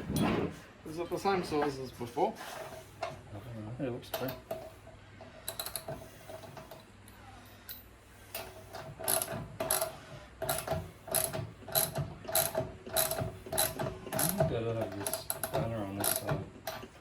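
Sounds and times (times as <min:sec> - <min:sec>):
ratchet wrench clicking: 0:09.0 - 0:14.4, 0:15.0 - 0:16.8.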